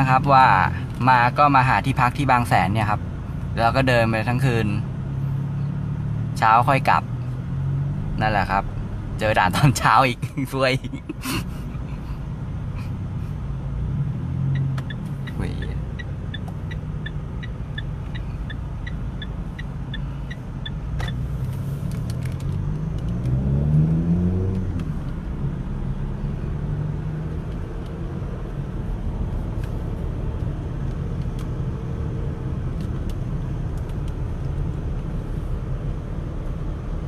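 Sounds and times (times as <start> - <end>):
car engine and road rumble: 0.0 - 37.0
engine accelerating: 11.6 - 37.0
regular high ticking: 14.5 - 21.2.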